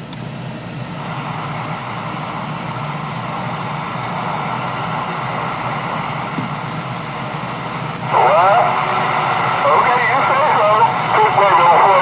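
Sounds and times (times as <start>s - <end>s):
radio static hiss: 7.7s - 12.0s.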